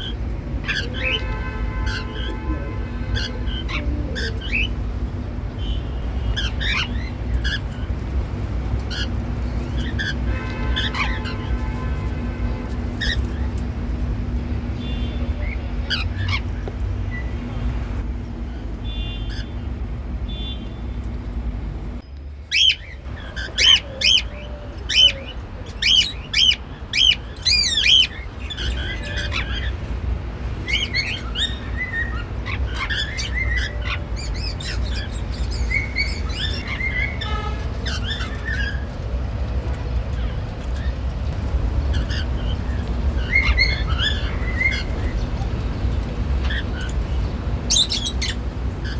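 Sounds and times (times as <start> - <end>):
cockatiels chirping and whistling: 0.0 - 2.4, 3.1 - 4.8, 6.3 - 8.0, 8.9 - 11.6, 12.9 - 13.6, 15.3 - 16.5, 22.5 - 30.0, 30.6 - 39.0, 40.1 - 48.9
low background hum: 0.0 - 48.9.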